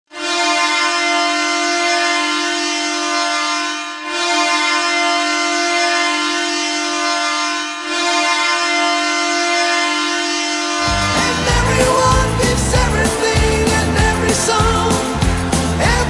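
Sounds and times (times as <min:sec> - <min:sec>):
hockey goal horn blasts: 0:00.1 - 0:12.5.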